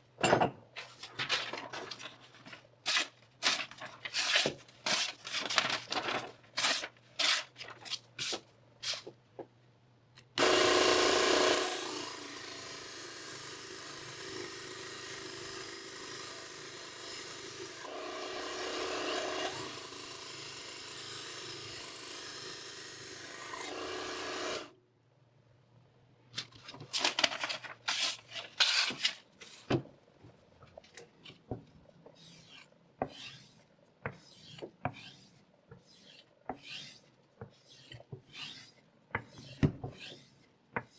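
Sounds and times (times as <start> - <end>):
knife grinding scrape: 32.2 - 33.6, 34.2 - 37.0, 37.6 - 40.4
knife sharpening rasping strokes: 32.2 - 33.6, 35.9 - 37.0, 37.6 - 40.3.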